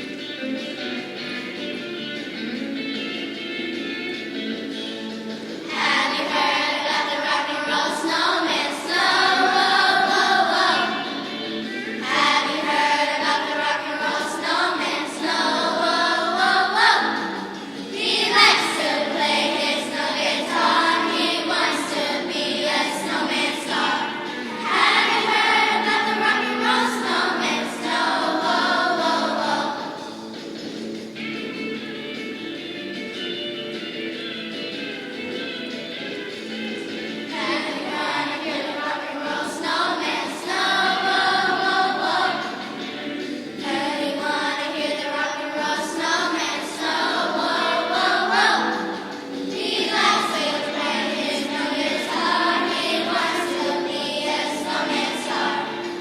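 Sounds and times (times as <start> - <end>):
instrumental accompaniment: 0.0 - 45.0, 46.0 - 56.0
children's choir singing: 5.3 - 30.5, 36.3 - 56.0.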